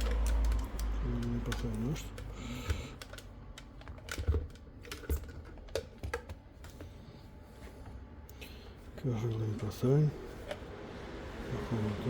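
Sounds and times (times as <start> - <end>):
small objects clicking and tapping: 0.0 - 6.4.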